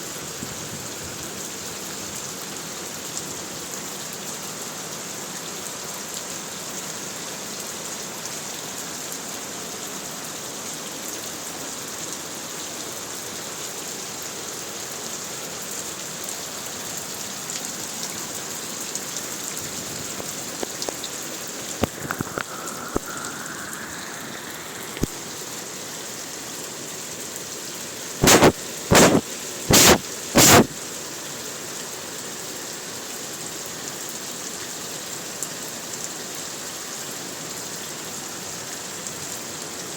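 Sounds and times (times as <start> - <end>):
heavy rain falling: 15.6 - 31.2
loud short bursts of noise: 28.2 - 30.8.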